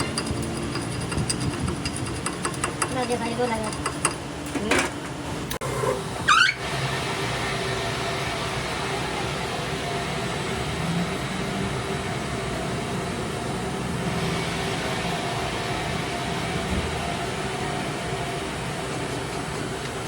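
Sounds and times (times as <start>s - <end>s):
workshop machine humming: 0.0s - 20.0s
high sliding squeal: 5.9s - 6.8s.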